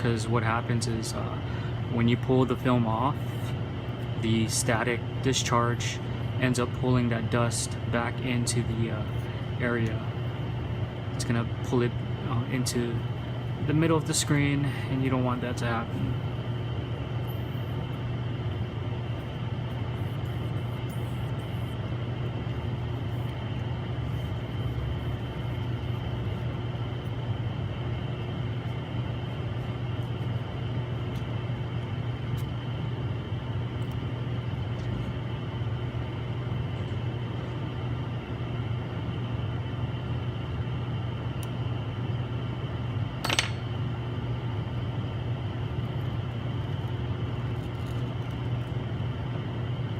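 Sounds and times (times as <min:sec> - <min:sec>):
steady machine hum: 0:00.0 - 0:49.9.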